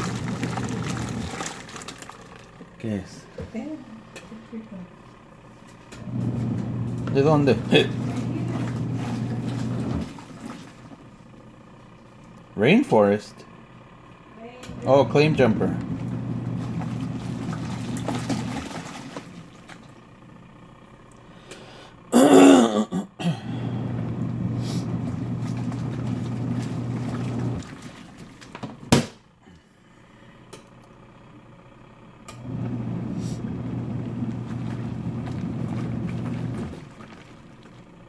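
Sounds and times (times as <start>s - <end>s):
washing machine motor humming: 0.0s - 38.0s
loud cough-like sound: 22.1s - 23.5s.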